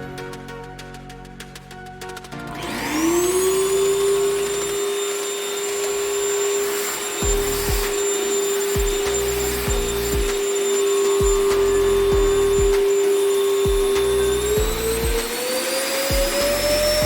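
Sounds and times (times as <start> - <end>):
vacuum cleaner motor whine: 2.5 - 17.0
low thumps: 7.2 - 7.9, 9.7 - 10.4, 12.1 - 12.9.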